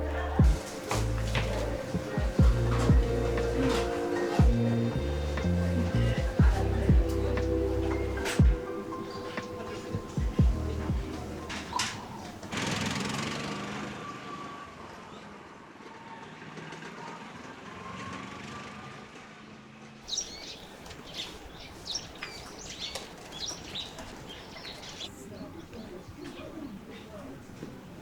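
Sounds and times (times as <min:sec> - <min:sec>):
small birds chirping: 0:00.0 - 0:12.6, 0:20.1 - 0:28.0.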